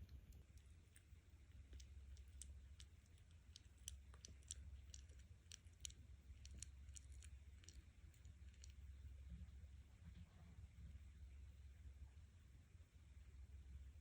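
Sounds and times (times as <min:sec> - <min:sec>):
kitten purring: 0:00.0 - 0:09.6.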